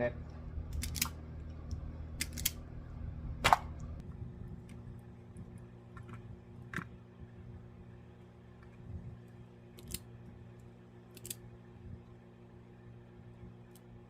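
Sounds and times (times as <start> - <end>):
wire strippers snipping: 0.7 - 1.2.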